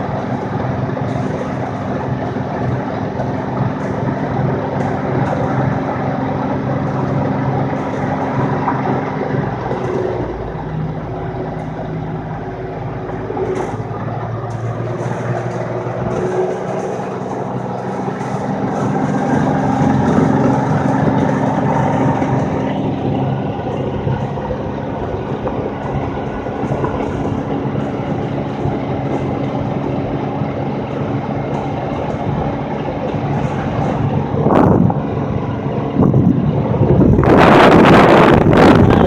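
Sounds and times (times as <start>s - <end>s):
tyres on the road: 0.0s - 39.0s
vehicle engine drone: 0.0s - 39.0s.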